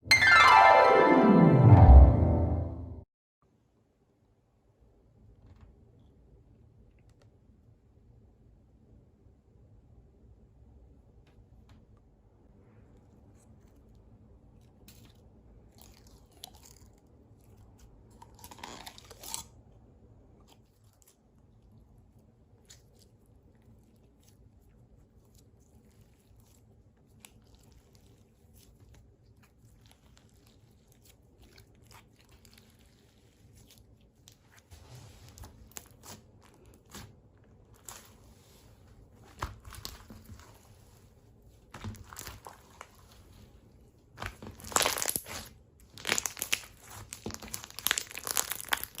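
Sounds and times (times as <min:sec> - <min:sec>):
slime crackling and popping: 0:39.2 - 0:40.9, 0:41.7 - 0:43.2, 0:44.1 - 0:49.0.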